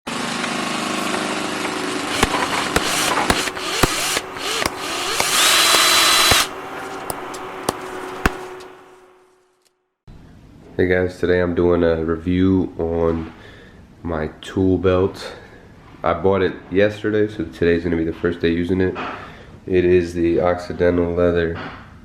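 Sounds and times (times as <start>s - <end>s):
power tool running: 0.1s - 8.7s
sharp knocks: 2.1s - 8.7s.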